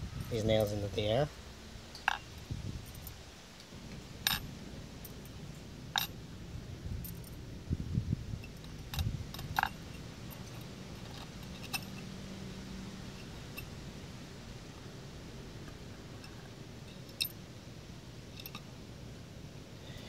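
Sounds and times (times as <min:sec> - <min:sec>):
steel nails clinking: 0:04.2 - 0:04.5, 0:06.0 - 0:06.2, 0:08.4 - 0:12.1, 0:18.4 - 0:18.7.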